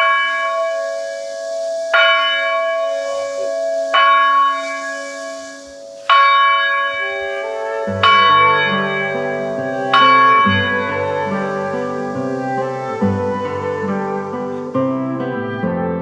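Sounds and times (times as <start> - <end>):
other bells ringing: 0.0 - 1.2, 3.9 - 5.2, 5.9 - 12.4
church bell ringing: 0.0 - 1.3, 1.9 - 14.8.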